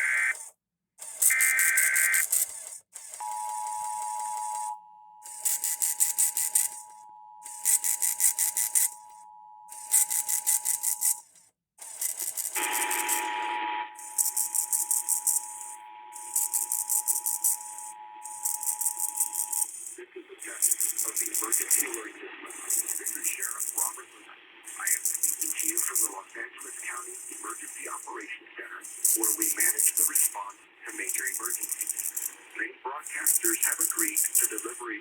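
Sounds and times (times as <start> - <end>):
short data burst: 1.2 - 35.0
high-pitched ticking interference: 3.2 - 11.2, 12.0 - 28.2, 28.8 - 32.5, 33.1 - 34.8
two-tone attention signal: 3.2 - 11.2, 12.6 - 24.0.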